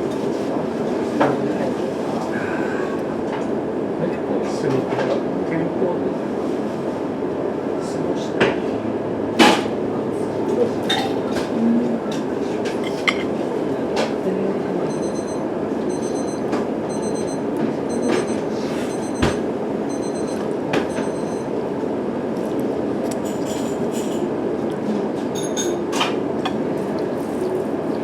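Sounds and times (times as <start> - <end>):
high electronic beeping: 14.9 - 21.5.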